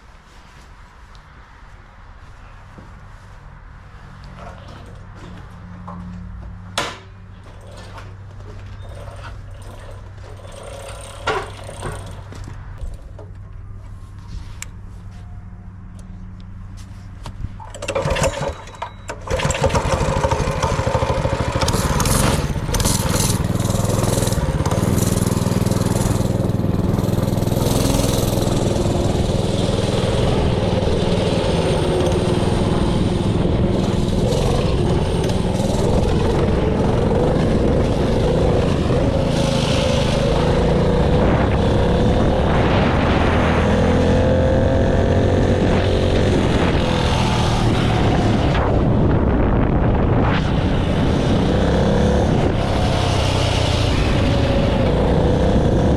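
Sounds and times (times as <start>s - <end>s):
small engine idling and revving: 7.4s - 12.6s, 17.7s - 55.9s.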